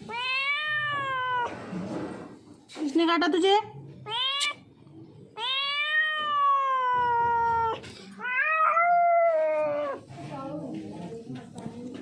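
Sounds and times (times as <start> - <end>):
cat yowling: 0.0 - 1.6, 5.4 - 10.1.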